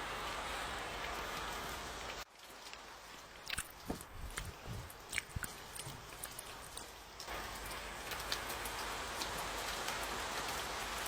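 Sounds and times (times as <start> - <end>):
steady rain: 0.0 - 11.0.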